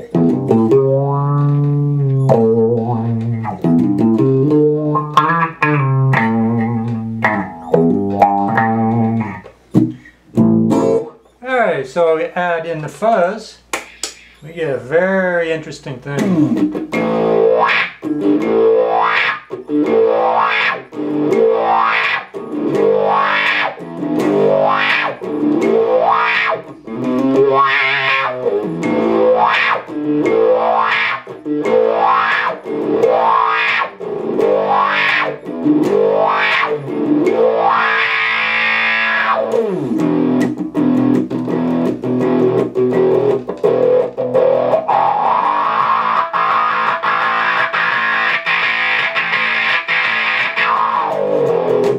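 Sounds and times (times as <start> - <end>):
distorted electric guitar with wah: 0.0 - 11.4, 16.1 - 51.9.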